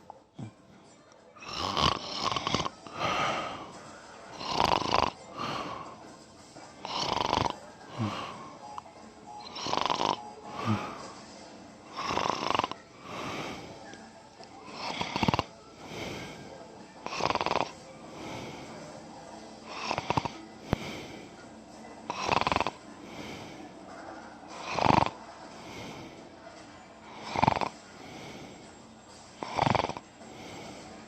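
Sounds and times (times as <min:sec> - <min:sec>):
person snoring: 0:01.4 - 0:06.0, 0:06.8 - 0:08.6, 0:09.4 - 0:11.2, 0:11.9 - 0:13.8, 0:14.6 - 0:18.8, 0:19.7 - 0:21.3, 0:22.1 - 0:23.8, 0:24.5 - 0:26.2, 0:27.1 - 0:28.7, 0:29.4 - 0:31.0.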